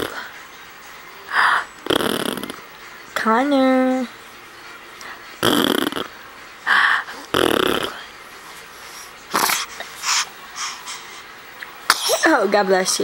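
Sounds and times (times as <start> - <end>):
person sneezing: 11.9 - 12.3.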